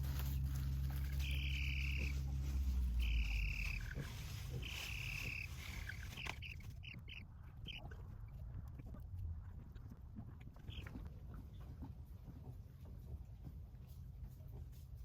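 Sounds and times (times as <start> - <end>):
baby chicks peeping: 0.0 - 9.6, 10.5 - 11.0
deep hum: 0.0 - 11.6.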